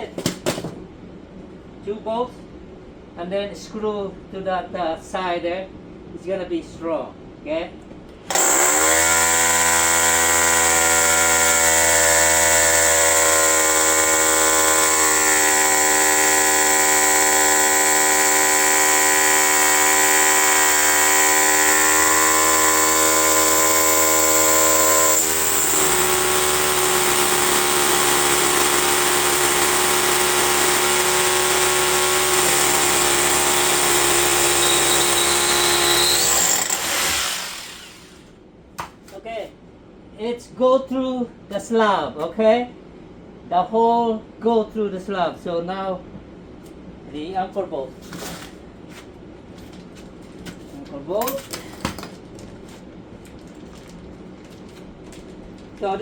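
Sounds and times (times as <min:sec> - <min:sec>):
electric drill boring concrete: 0:08.3 - 0:38.2.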